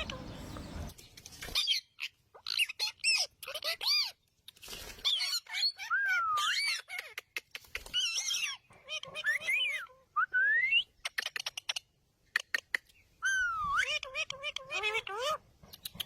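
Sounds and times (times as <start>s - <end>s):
parrots squawking: 0.0s - 0.9s, 1.6s - 4.2s, 5.0s - 10.0s, 12.4s - 16.0s.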